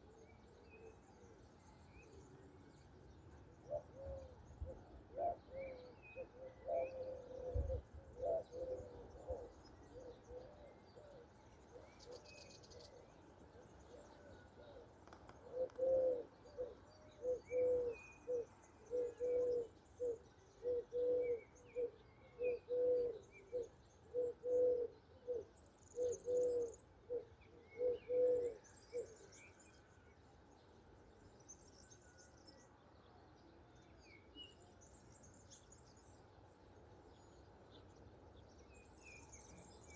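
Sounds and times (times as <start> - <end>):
songbirds chirping faintly: 0.0 - 39.9
dove cooing: 3.6 - 13.0, 13.9 - 29.3.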